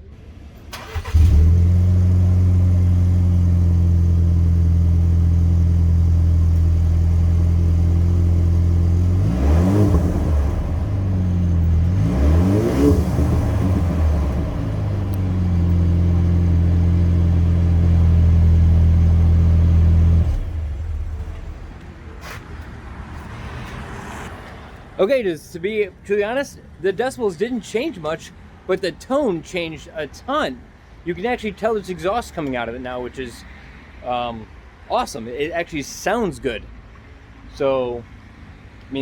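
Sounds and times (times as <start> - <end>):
engine revving: 0.8 - 21.8
pickup truck engine idling: 13.0 - 21.8.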